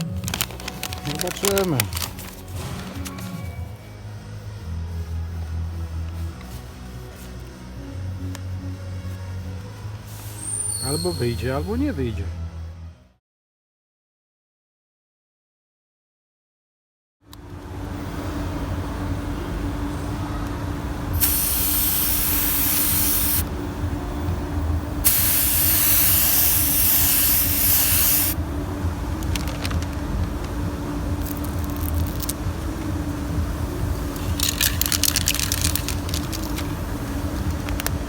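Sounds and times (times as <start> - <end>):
steady machine hum: 17.3 - 38.0
paint spray gun hissing: 21.2 - 23.4, 25.0 - 28.4
short spurts of air: 21.2 - 23.4, 25.0 - 28.4.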